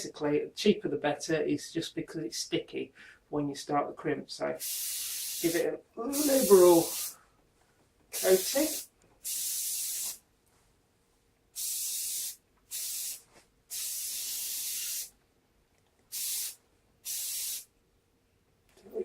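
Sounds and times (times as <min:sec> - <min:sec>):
hairspray can hissing: 0:04.6 - 0:07.2, 0:08.2 - 0:10.2, 0:11.6 - 0:15.1, 0:16.1 - 0:17.7.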